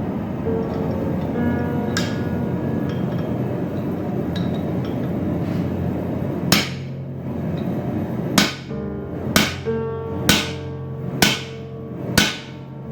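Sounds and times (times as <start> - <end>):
steady background hum: 0.0 - 12.9
hammer blows ringing on steel: 6.5 - 7.0, 8.4 - 8.7, 9.4 - 12.6.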